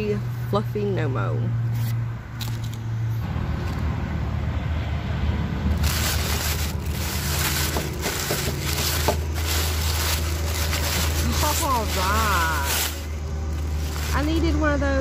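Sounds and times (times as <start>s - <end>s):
packaging crinkling: 5.7s - 14.4s.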